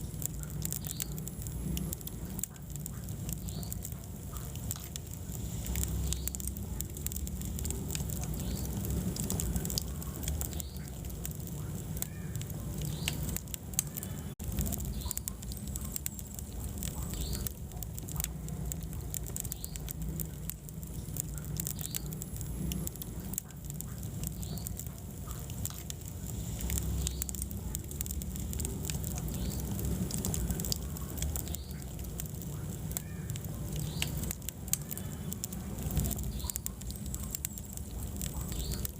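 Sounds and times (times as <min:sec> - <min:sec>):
fire crackling and popping: 0:00.0 - 0:38.9
low rumble of flames: 0:00.0 - 0:38.9.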